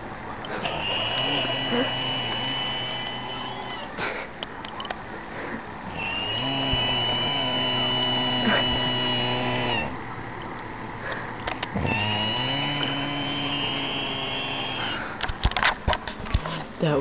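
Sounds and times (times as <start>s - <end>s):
man snoring with whistle: 0.5s - 4.0s, 5.9s - 10.0s, 11.7s - 15.2s.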